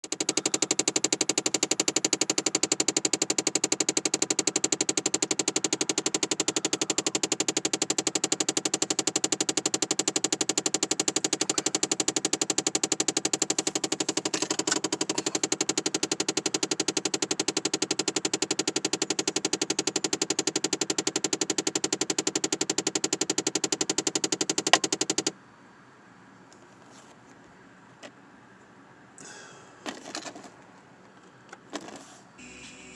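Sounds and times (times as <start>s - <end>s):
rapid clicking inside car: 0.0s - 25.3s.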